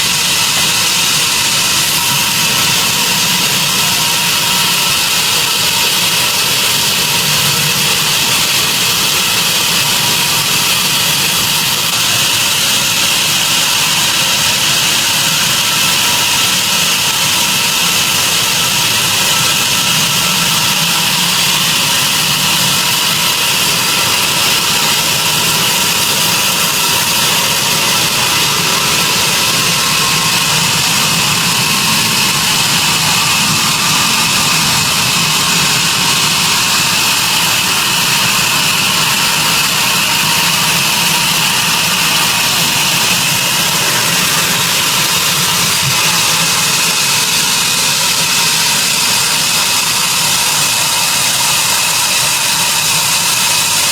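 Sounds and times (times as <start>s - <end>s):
sawmill saw cutting log: 0.0s - 53.9s.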